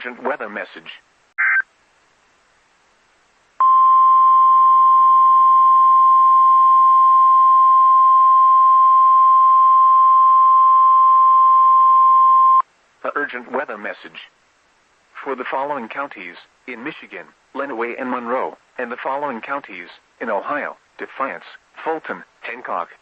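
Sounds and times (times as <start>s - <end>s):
brief beep: 7.5s - 12.6s.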